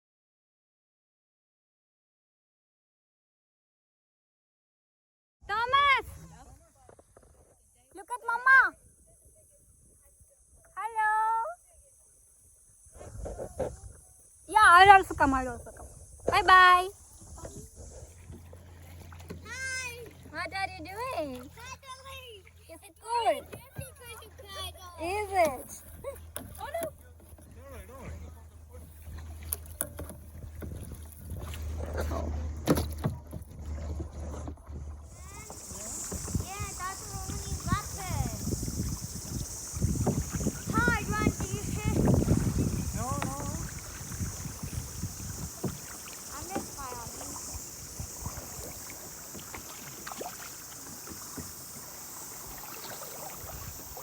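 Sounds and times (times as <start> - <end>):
paddle splashing water: 5.5 - 54.0
steady high hiss: 35.1 - 54.0.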